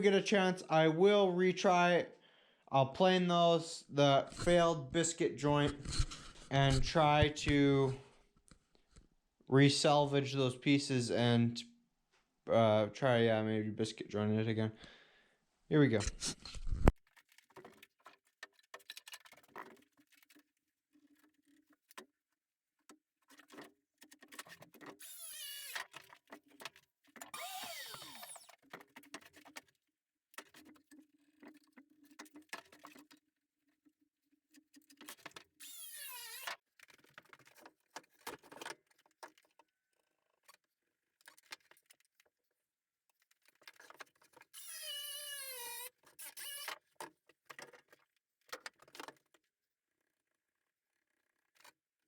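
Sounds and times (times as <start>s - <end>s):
small power tool whirring: 25.0s - 25.9s, 27.3s - 28.6s, 35.6s - 36.6s, 44.5s - 46.8s.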